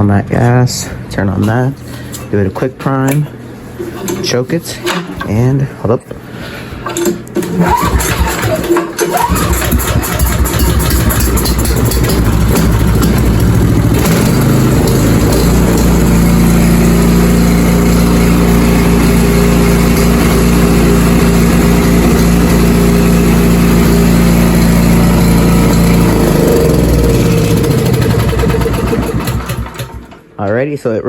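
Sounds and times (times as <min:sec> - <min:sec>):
snowblower engine running: 0:07.0 - 0:30.2.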